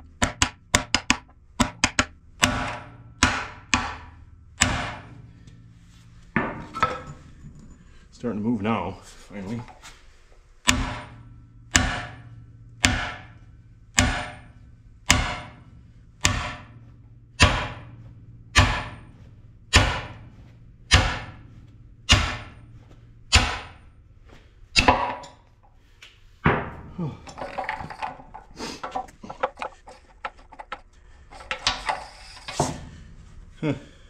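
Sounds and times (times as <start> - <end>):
hammer blows with metallic ring: 10.7 - 23.9.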